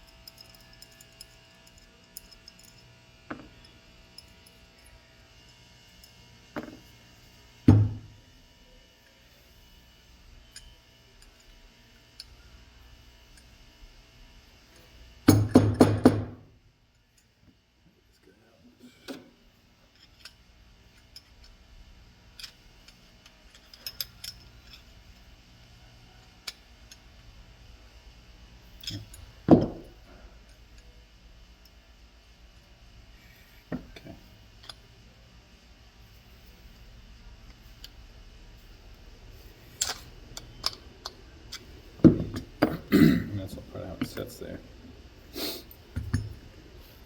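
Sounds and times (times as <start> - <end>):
small metal parts clicking: 0.0 - 4.9, 19.9 - 25.3, 28.7 - 29.3, 39.4 - 42.5
heavy knocks on a bench: 7.7 - 8.1, 15.3 - 16.4, 29.5 - 29.8.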